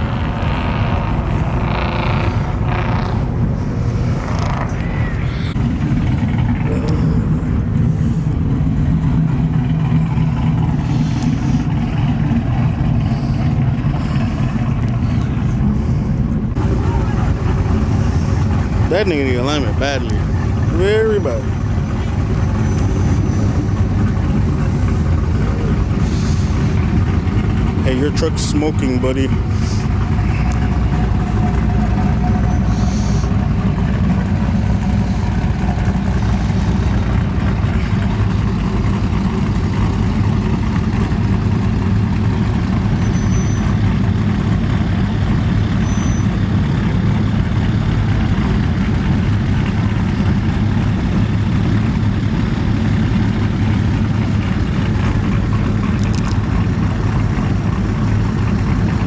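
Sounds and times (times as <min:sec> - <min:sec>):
truck engine humming: 0:00.0 - 0:59.0.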